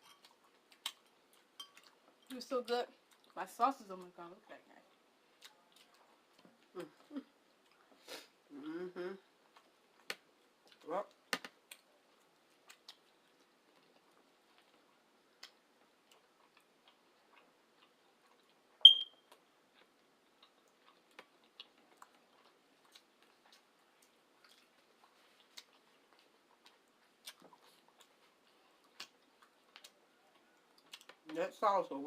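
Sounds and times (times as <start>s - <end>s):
sharp ringing clink: 18.9s - 19.2s
chewing mouth clicks: 19.3s - 31.3s.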